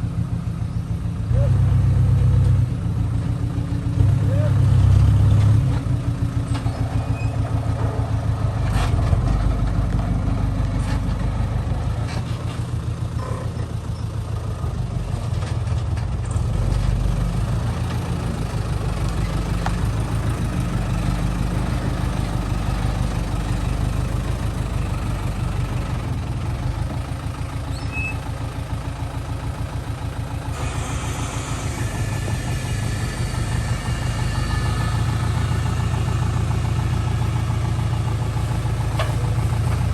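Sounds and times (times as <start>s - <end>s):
heavy diesel engine throbbing: 0.0s - 39.9s
hiss: 30.5s - 36.6s.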